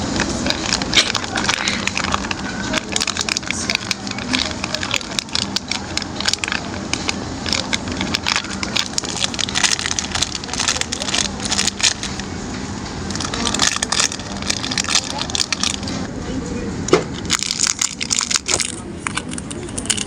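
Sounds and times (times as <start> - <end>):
rustling and crinkling material: 0.0 - 12.4, 13.1 - 16.1.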